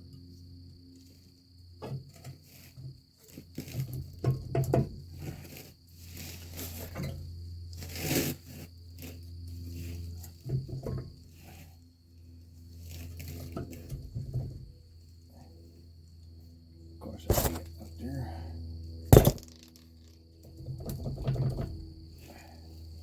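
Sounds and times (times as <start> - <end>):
steady low hum: 8.7 - 23.0
tools and metal parts clinking: 19.1 - 20.3.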